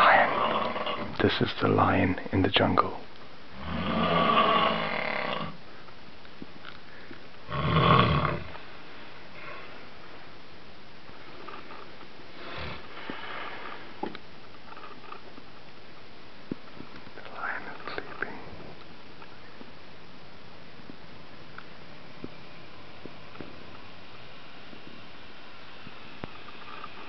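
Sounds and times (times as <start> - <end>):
faint breathing: 6.7 - 7.4, 8.5 - 10.1, 11.4 - 14.0.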